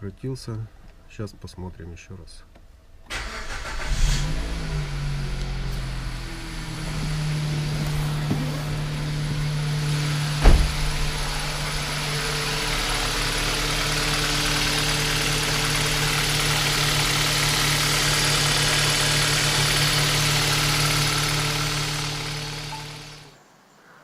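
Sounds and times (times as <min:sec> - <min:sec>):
car engine idling: 0:02.6 - 0:23.3
sharp thump: 0:06.8 - 0:11.8.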